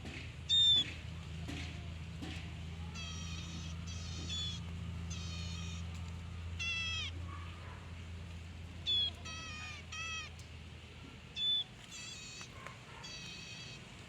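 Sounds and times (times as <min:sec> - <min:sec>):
ashy prinia calling: 0:02.9 - 0:07.3, 0:08.8 - 0:10.4, 0:11.3 - 0:13.9.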